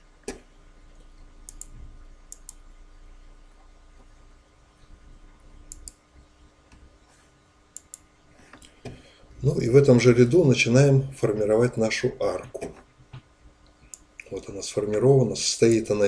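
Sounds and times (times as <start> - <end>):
faint electrical hum: 0.0 - 16.0
computer mouse clicks: 1.5 - 2.6, 5.7 - 6.0, 7.8 - 9.0, 12.5 - 14.3.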